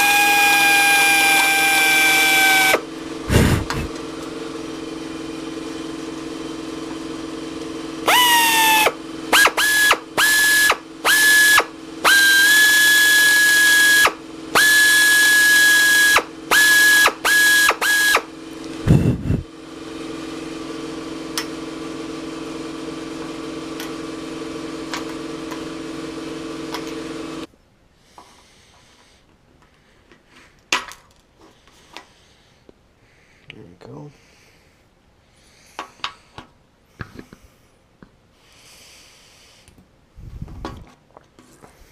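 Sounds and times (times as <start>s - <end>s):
drill whining in short bursts: 0.0s - 3.9s, 8.0s - 19.4s
steady machine hum: 0.0s - 27.5s.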